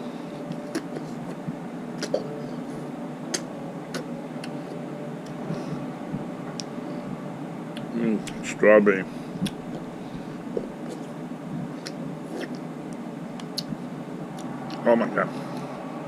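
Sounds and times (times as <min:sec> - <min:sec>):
steady background hum: 0:00.0 - 0:16.0
mouth smacks eating: 0:00.5 - 0:01.4, 0:02.0 - 0:04.6, 0:09.4 - 0:09.9, 0:10.6 - 0:14.8.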